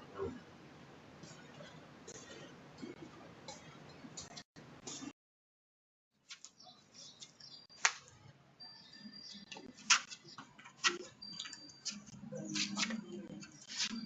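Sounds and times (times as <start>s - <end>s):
faint background noise: 0.0s - 5.1s.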